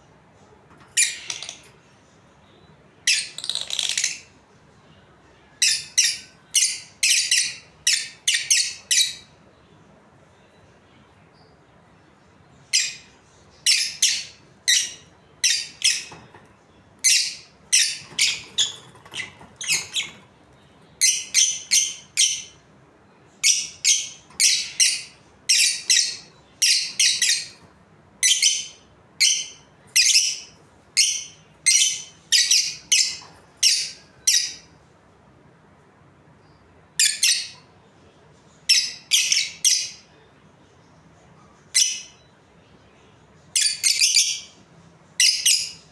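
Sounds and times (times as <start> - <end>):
budgerigars chirping: 5.6 - 9.3, 12.8 - 16.4, 17.0 - 20.3, 21.0 - 22.6, 23.4 - 34.7, 38.7 - 40.1, 43.6 - 44.6.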